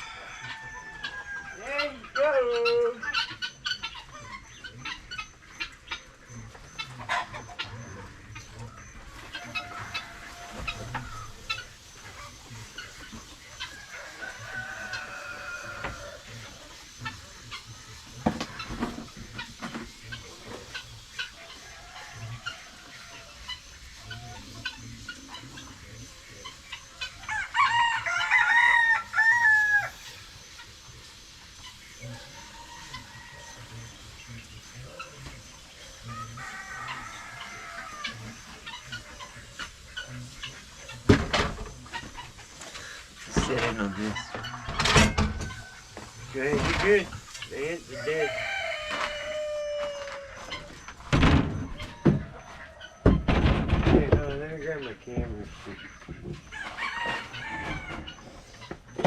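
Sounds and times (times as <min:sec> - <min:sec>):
rooster crowing: 0:00.0 - 0:01.7, 0:09.1 - 0:11.5, 0:13.6 - 0:16.4, 0:21.4 - 0:24.6, 0:27.0 - 0:30.2, 0:32.0 - 0:33.9, 0:35.8 - 0:38.4, 0:42.8 - 0:46.5, 0:47.6 - 0:50.9, 0:56.5 - 0:58.2
chickens clucking: 0:00.0 - 0:59.0.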